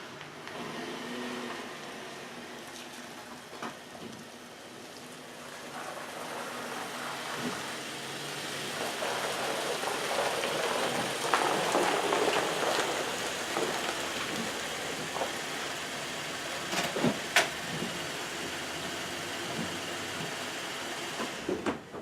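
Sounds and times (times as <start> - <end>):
tyres crackling over plastic mat: 8.7 - 18.0.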